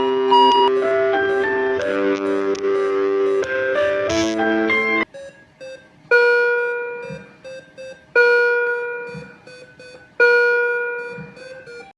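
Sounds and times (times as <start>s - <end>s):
patient monitor alarm chime: 0.0s - 2.0s, 5.2s - 11.9s.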